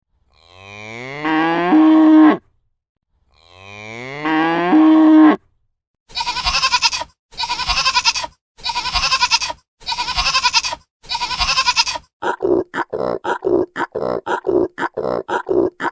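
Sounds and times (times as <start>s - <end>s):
cow mooing: 0.5s - 2.4s, 3.5s - 5.4s.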